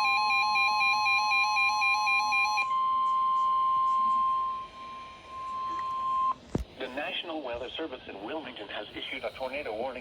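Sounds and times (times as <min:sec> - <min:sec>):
steady alarm tone: 0:00.0 - 0:06.4
warbling two-tone alarm beeps: 0:00.0 - 0:06.4.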